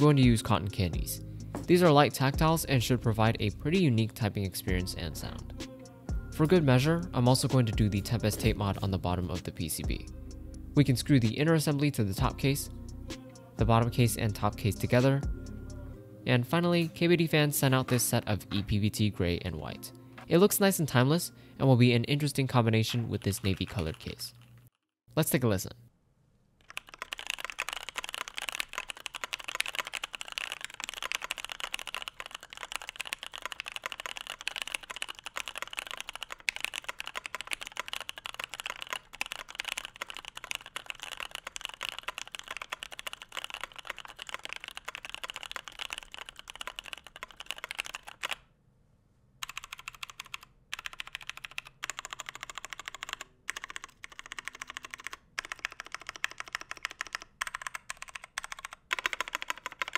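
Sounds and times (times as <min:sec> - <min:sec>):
mechanical keyboard typing: 0:22.8 - 0:24.4, 0:26.6 - 0:48.4, 0:49.4 - 0:59.9.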